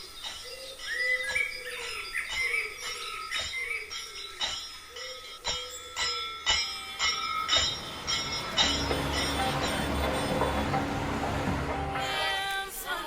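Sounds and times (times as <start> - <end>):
bell-like struck notes: 0.5 - 12.5
held gliding tones: 7.0 - 12.7.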